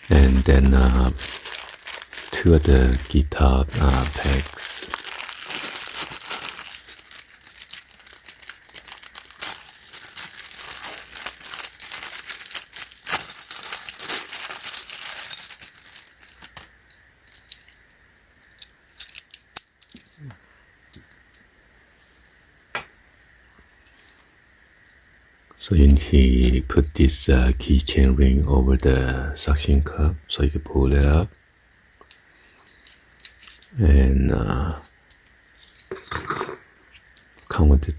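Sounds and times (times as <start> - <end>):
plastic packaging crinkling: 0.0 - 17.6.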